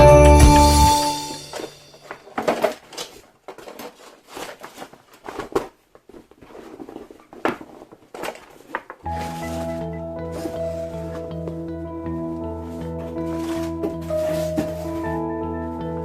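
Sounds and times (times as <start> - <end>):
packaging rustling: 1.5 - 11.3, 13.0 - 15.2.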